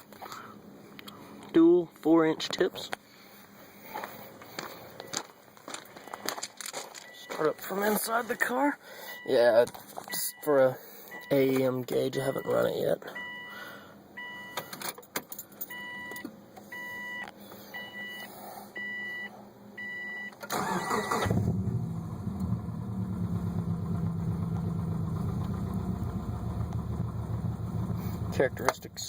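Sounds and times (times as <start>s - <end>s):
car engine cranking and idling: 20.4s - 29.0s.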